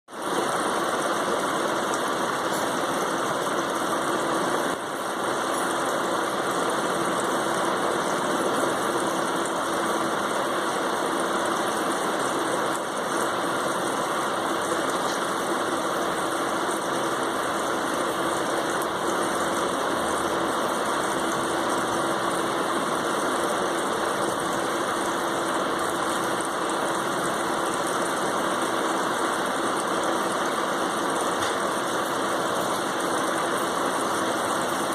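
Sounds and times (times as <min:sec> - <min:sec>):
mechanical hum and hiss: 0:00.2 - 0:34.9.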